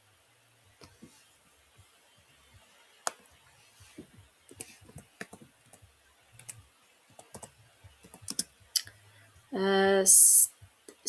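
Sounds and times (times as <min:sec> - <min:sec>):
typing on a keyboard: 0:04.5 - 0:05.8, 0:07.2 - 0:08.5.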